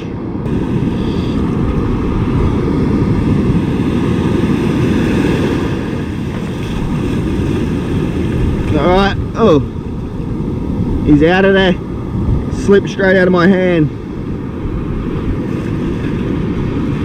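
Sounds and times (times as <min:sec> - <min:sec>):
surf washing: 0:00.0 - 0:17.0
wind buffeting microphone: 0:00.0 - 0:17.0.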